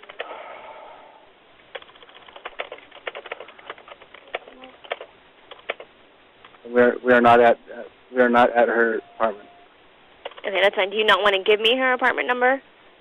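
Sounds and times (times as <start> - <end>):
keyboard typing over a phone line: 0.0 - 0.3, 1.7 - 5.9, 10.2 - 10.5.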